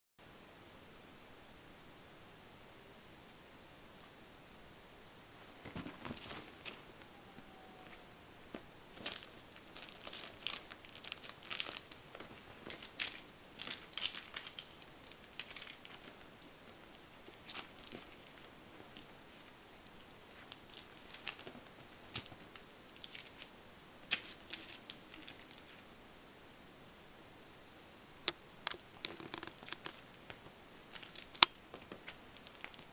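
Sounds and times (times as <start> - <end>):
crinkling and rustling: 5.4 - 25.9, 28.2 - 32.9.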